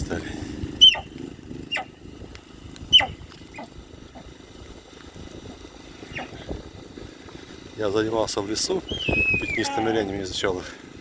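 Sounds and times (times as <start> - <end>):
deer alarm whistles: 0.8 - 1.1, 8.8 - 10.0.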